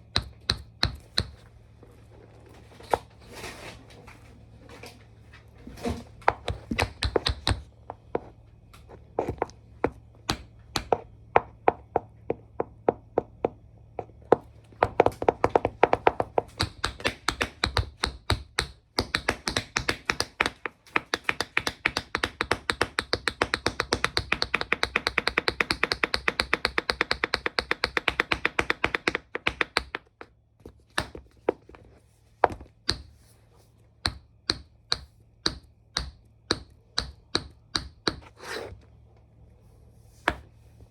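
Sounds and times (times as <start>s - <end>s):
tap shoes striking hard floor: 9.2s - 31.8s, 32.4s - 33.1s.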